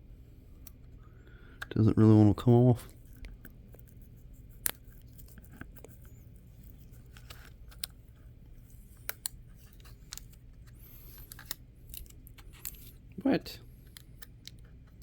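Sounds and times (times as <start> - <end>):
plastic film peeling crinkles: 2.9 - 13.1.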